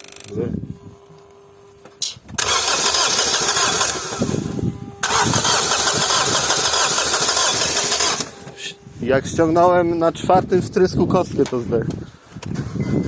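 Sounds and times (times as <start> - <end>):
diesel engine running roughly: 2.4 - 8.7.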